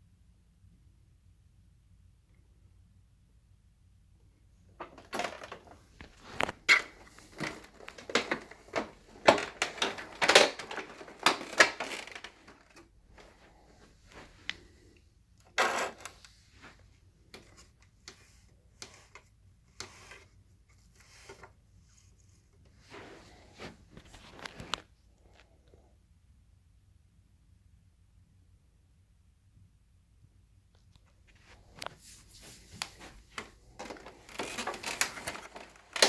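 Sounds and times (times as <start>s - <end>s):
plastic vacuum clicks and knocks: 4.8s - 12.9s, 33.4s - 36.0s.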